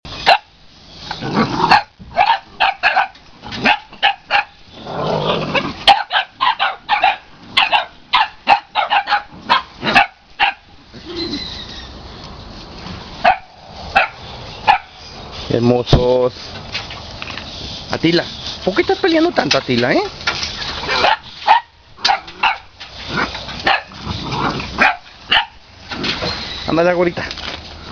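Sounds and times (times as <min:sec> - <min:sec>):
puppies barking: 0:00.2 - 0:12.0, 0:13.2 - 0:15.3, 0:20.7 - 0:26.7.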